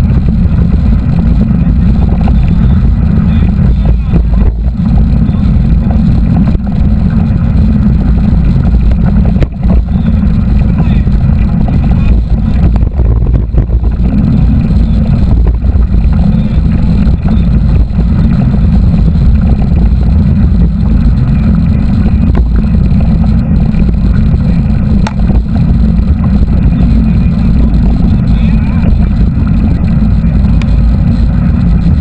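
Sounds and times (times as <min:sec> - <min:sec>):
wind buffeting microphone: 0:00.0 - 0:32.0.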